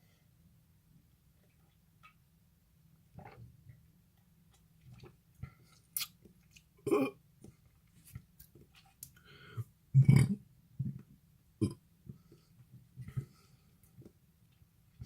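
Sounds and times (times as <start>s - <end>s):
wet mouth clicks and lip smacks: 5.8s - 6.7s.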